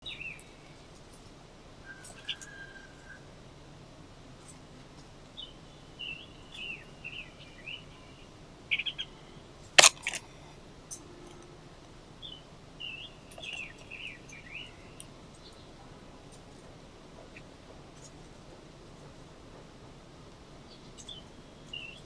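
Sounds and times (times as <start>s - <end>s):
songbird twittering: 0.0s - 0.9s, 1.8s - 3.3s, 5.4s - 9.5s, 12.2s - 15.8s, 20.6s - 22.0s
sharp click: 9.8s - 10.2s.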